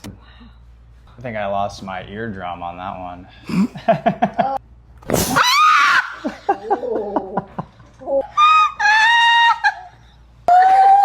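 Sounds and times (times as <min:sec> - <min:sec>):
person shrieking: 0:05.3 - 0:06.2, 0:10.5 - 0:11.0
person laughing: 0:06.2 - 0:10.0
long high-pitched cry: 0:08.2 - 0:11.0.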